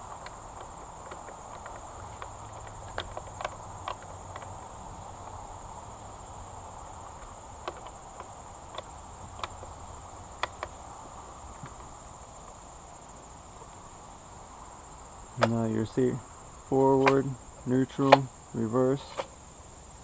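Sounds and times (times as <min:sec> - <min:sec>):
high insect trill: 0:00.0 - 0:20.0
light clicks and taps: 0:00.1 - 0:05.4.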